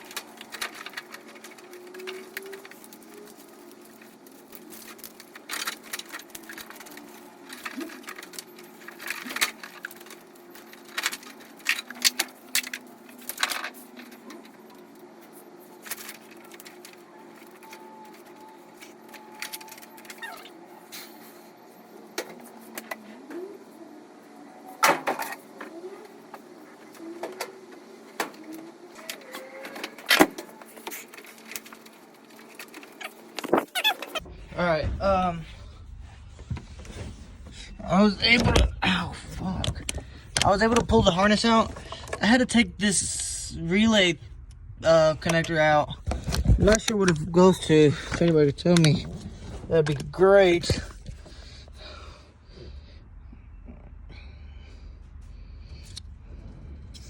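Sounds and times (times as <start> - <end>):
plastic connectors clicking and rattling: 0.0 - 14.8
steady low hum: 0.0 - 57.0.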